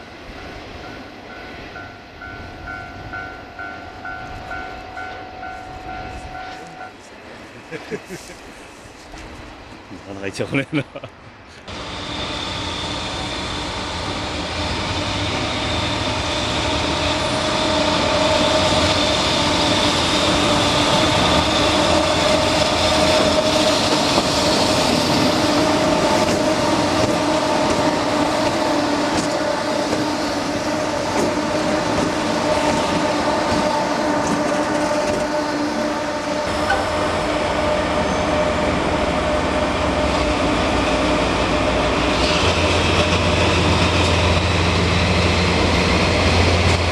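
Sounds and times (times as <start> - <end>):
electric train hum: 0.0 - 10.0, 10.8 - 46.9
train wheel running noise: 11.7 - 37.8.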